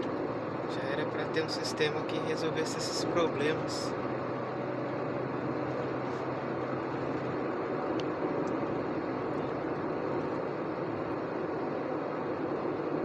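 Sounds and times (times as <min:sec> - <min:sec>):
road and engine noise in vehicle: 0:00.0 - 0:13.0.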